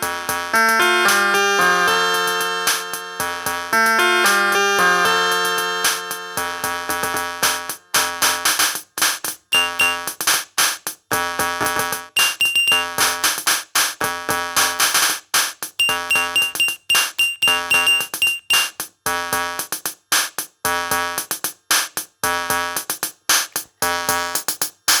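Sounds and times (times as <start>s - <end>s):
drum machine beat: 8.5s - 10.4s, 11.7s - 13.6s, 15.8s - 18.8s, 22.9s - 25.0s.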